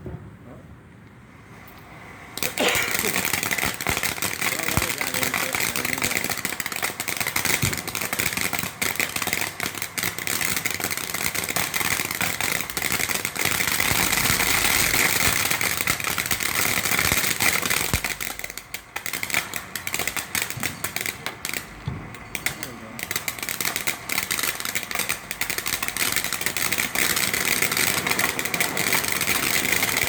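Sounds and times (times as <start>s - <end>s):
firework fountain hissing and crackling: 1.1s - 30.0s.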